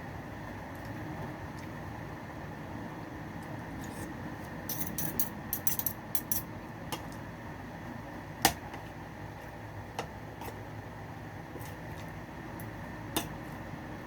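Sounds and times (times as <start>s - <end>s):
low background hum: 0.0s - 14.0s.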